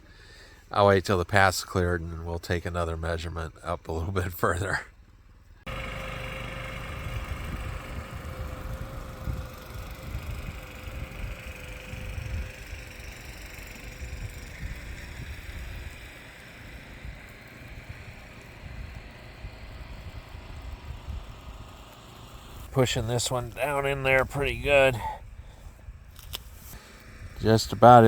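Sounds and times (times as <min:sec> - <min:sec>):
steady motor whine: 0:05.7 - 0:23.1
motorized cart rumble: 0:05.7 - 0:28.0.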